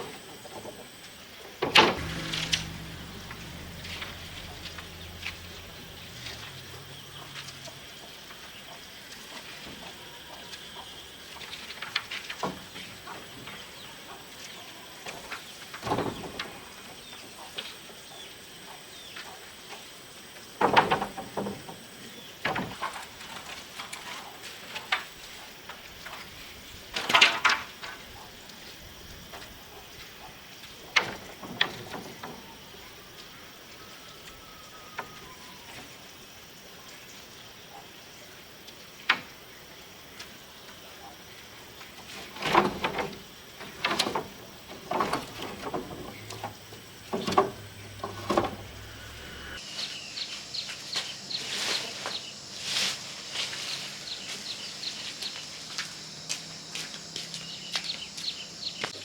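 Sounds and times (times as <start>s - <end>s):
faint steady hiss: 0.0s - 18.4s.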